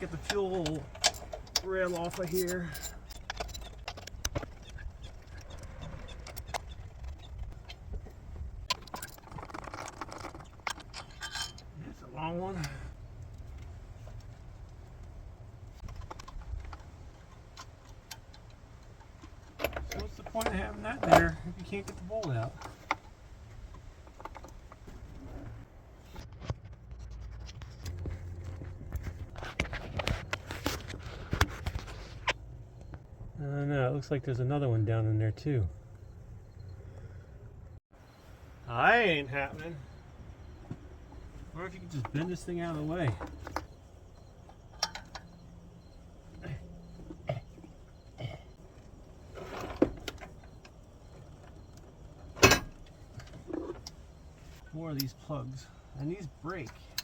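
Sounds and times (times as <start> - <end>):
hand tools clicking and scraping: 0.0 - 25.0.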